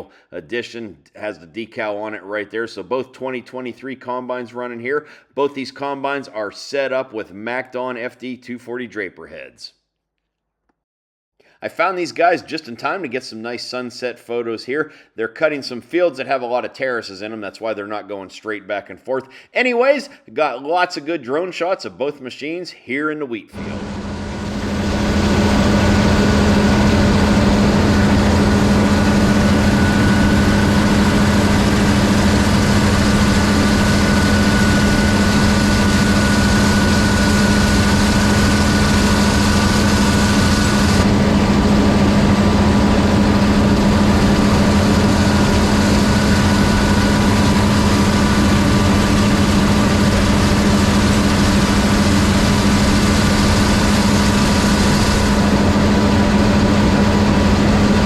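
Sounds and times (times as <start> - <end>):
combine engine running: 23.6 - 58.0.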